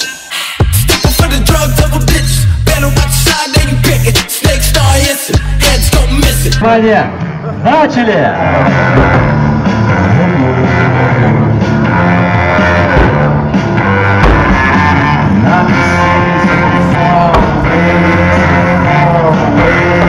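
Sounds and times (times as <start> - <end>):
rock song with guitar and vocals: 8.6 - 20.0.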